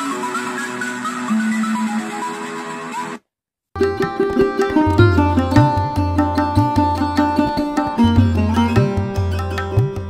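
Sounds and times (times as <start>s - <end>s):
music with plucked notes and drums: 3.8s - 10.0s
plucked-string music through speakers: 3.8s - 10.0s.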